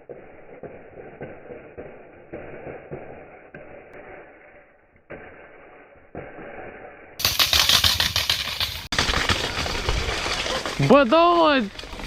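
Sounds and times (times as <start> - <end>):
bare bike rim rattling on ground: 7.2 - 12.0.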